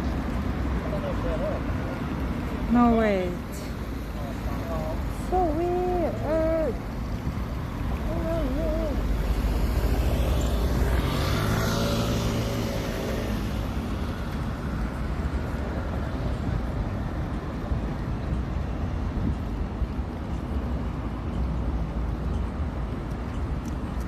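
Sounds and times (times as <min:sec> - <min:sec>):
vehicle passing by: 0:00.0 - 0:17.1
low street rumble: 0:00.0 - 0:24.0.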